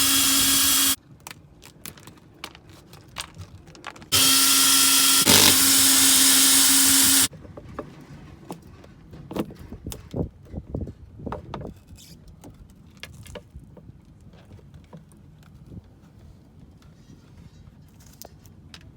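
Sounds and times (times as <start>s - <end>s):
power drill running: 0.0s - 1.0s, 4.1s - 7.3s.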